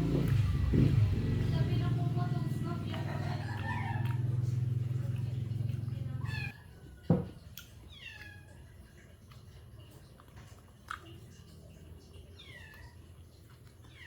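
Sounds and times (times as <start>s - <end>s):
cat meowing: 6.2s - 6.6s, 12.4s - 13.0s.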